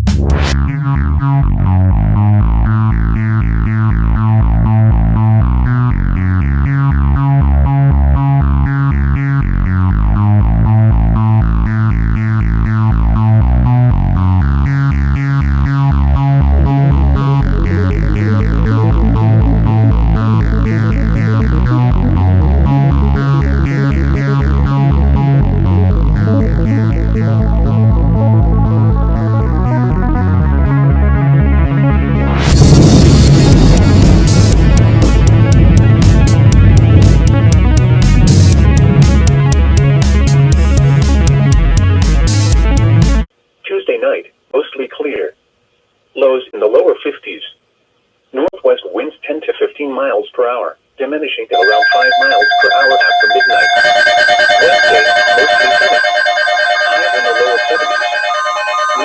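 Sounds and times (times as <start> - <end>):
pulsing bass line: 0.0 - 43.2, 51.6 - 59.0
electronic synthesizer music: 51.6 - 59.0.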